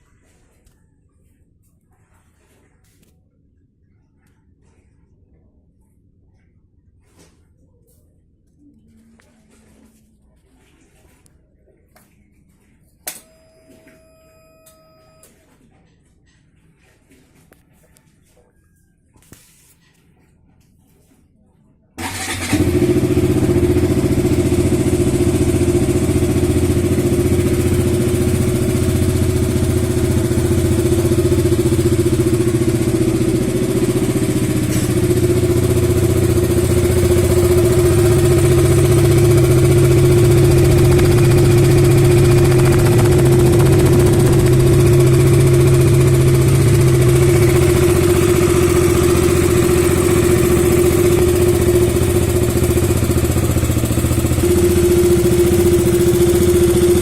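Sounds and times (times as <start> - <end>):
motorcycle engine idling: 22.0 - 57.0
timing chain whine: 25.7 - 57.0.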